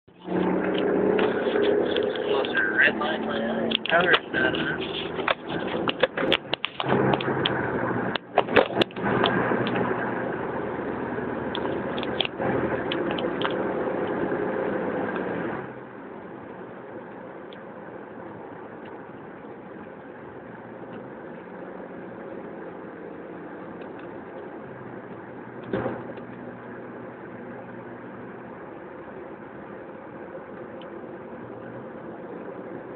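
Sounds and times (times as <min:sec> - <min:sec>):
car engine misfiring: 0:00.1 - 0:15.3.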